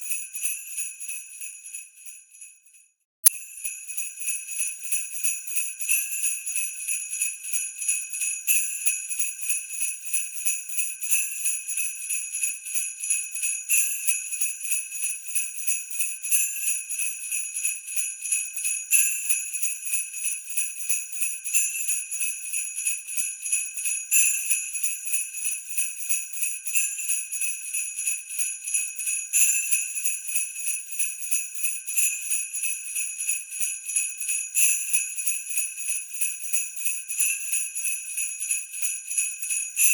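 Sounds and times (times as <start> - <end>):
sleigh bells jingling: 23.2 - 39.9.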